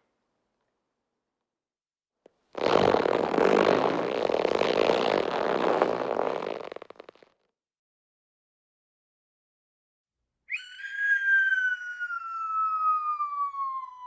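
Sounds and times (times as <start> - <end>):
rattling fart sound effect: 2.6 - 7.4.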